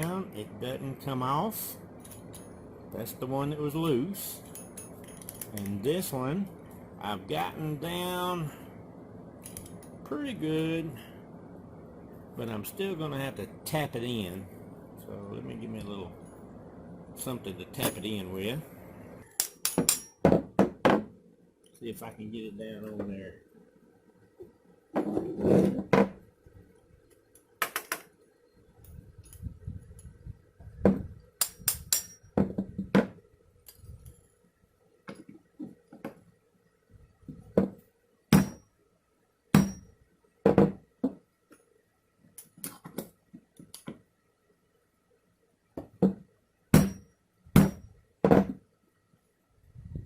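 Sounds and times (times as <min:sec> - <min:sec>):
fan humming: 0:00.0 - 0:20.2.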